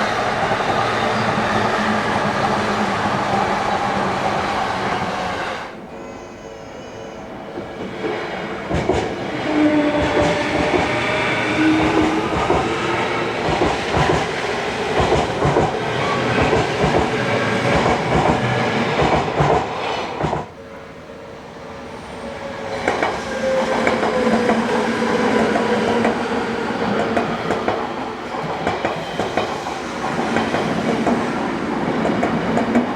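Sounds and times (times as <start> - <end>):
train wheels clacking over rails: 7.6 - 20.5, 22.6 - 32.9.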